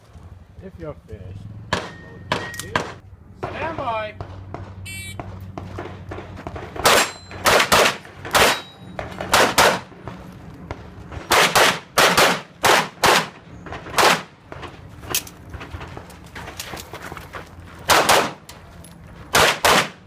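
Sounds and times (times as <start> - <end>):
handgun shots: 6.8 - 9.8, 17.9 - 18.4, 19.3 - 20.0.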